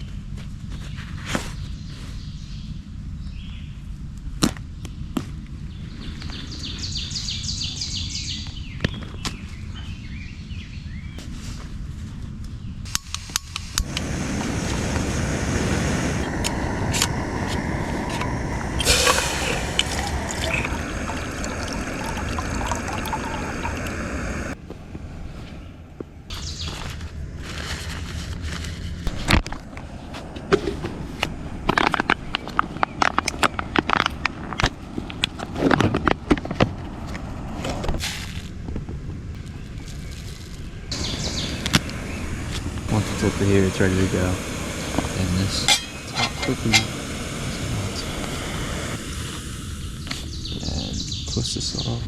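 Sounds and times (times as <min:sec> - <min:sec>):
water pouring into a pot: 0:18.5 - 0:24.6.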